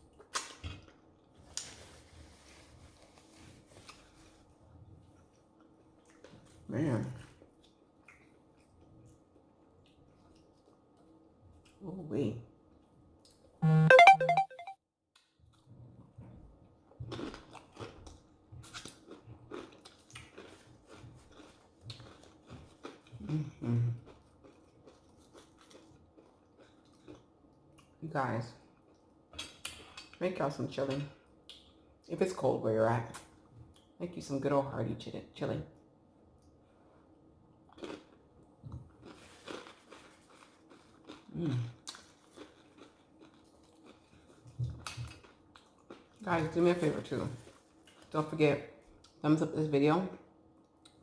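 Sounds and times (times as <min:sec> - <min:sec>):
chewing food: 0:16.9 - 0:28.0, 0:37.7 - 0:48.2.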